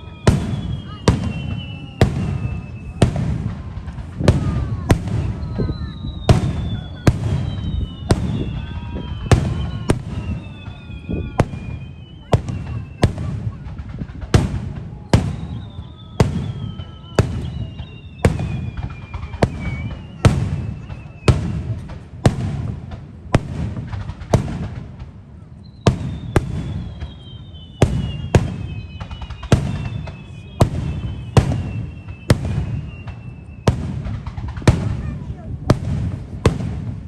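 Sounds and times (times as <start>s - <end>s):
firework shells booming: 0.0s - 25.2s, 25.8s - 37.0s
high whistle sliding down: 5.4s - 13.0s, 15.3s - 21.3s, 25.6s - 33.7s.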